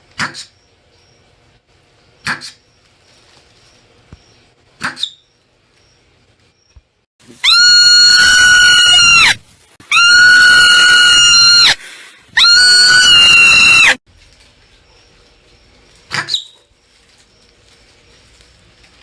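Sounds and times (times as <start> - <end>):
marmot screaming: 7.4 - 14.0.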